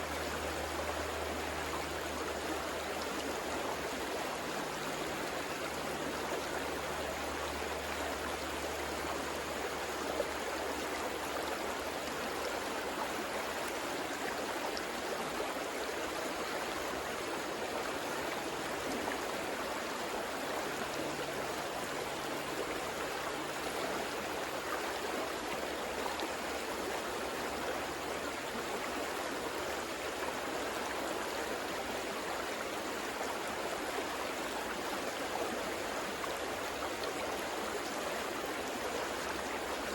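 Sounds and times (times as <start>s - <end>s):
river water rushing over stones: 0.0s - 39.9s.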